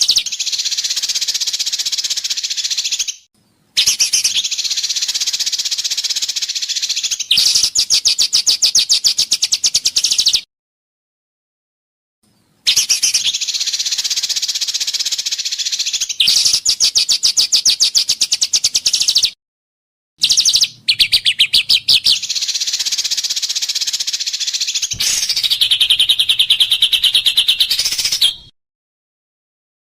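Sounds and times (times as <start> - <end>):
songbird rapid high notes: 24.8 - 28.4.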